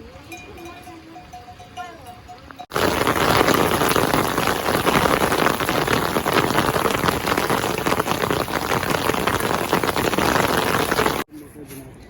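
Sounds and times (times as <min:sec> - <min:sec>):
heavy rain falling: 0:02.7 - 0:11.2.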